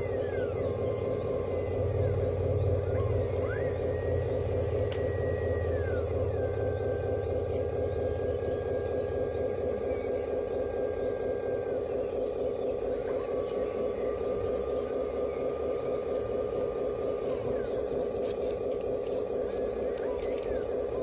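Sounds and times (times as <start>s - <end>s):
model excavator hydraulics running: 0.0s - 21.0s
thin whine: 0.0s - 21.0s.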